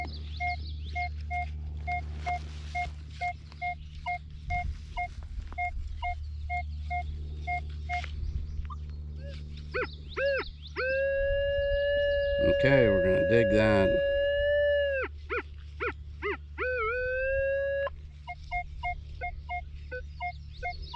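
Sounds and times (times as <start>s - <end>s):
metal detector beeping: 0.0s - 8.1s
bird chirps: 0.0s - 13.9s, 15.0s - 20.9s
steady low hum: 0.0s - 20.9s.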